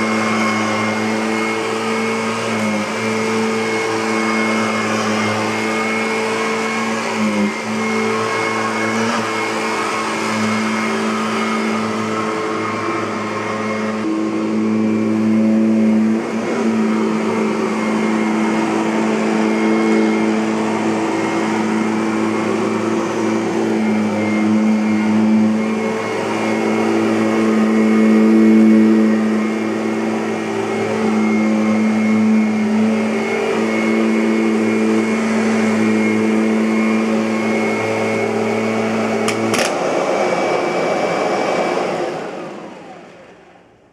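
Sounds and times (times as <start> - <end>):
upright vacuum cleaner running: 0.0 - 43.9.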